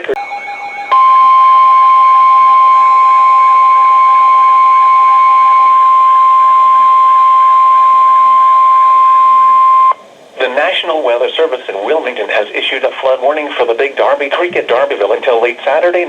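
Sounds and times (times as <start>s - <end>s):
loud steady high alarm beep: 0.2s - 10.0s.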